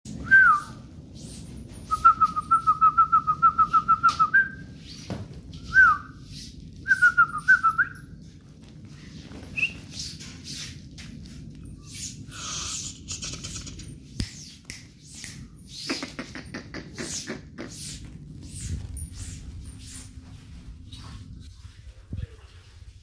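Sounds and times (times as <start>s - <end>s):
person whistling: 0.2s - 0.8s, 5.7s - 6.1s.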